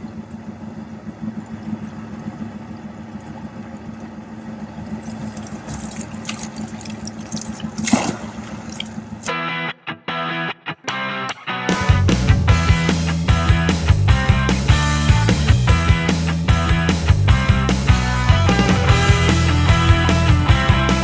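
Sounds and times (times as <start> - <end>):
motor hum: 0.0 - 9.4, 11.9 - 21.0
water rushing and splashing: 2.2 - 9.3
loud splash: 5.4 - 9.0
music: 9.3 - 21.0.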